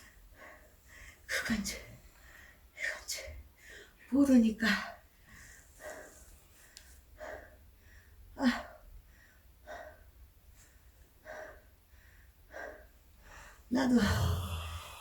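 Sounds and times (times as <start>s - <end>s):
woman gasping and exhaling: 13.8s - 15.0s.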